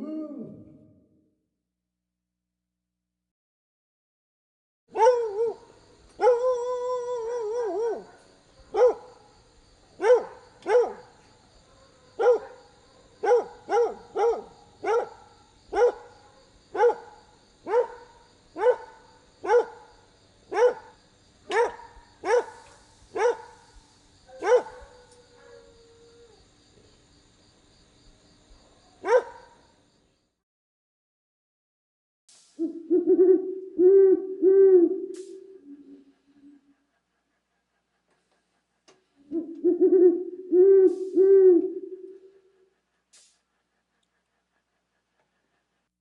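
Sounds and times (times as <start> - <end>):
dog barking: 4.9 - 5.6, 6.2 - 6.5, 7.7 - 9.2, 10.0 - 19.9, 20.5 - 23.6, 24.3 - 25.8, 28.6 - 29.6.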